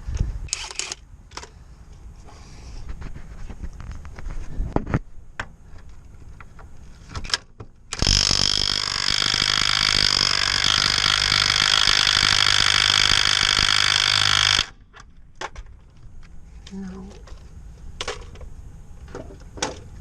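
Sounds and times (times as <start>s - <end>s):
impact wrench hammering: 8.0s - 14.7s.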